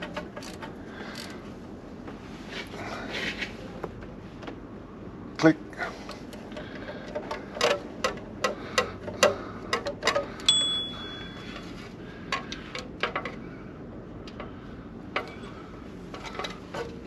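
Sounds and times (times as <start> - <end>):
metallic clicks and clinks of tools: 10.0 - 11.6
high ringing note: 10.5 - 11.6.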